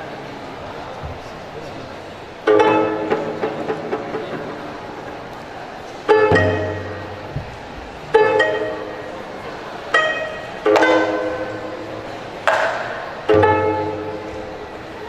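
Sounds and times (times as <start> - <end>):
plucked zither notes: 2.4 - 15.0.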